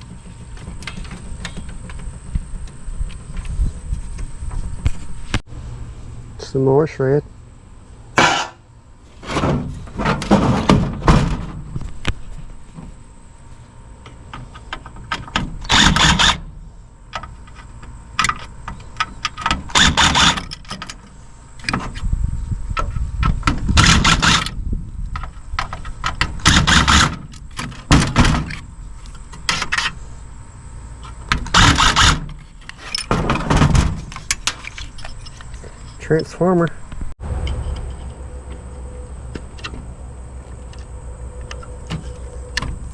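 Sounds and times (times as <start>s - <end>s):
clicks and rattles of parts: 0.0s - 3.6s, 17.1s - 22.0s, 22.8s - 30.0s, 31.0s - 36.1s.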